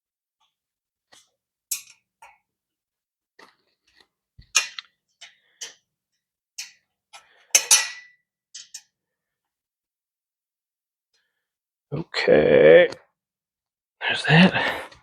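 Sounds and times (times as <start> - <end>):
allen key clinking on metal bolts: 1.7 - 2.0, 7.6 - 8.9.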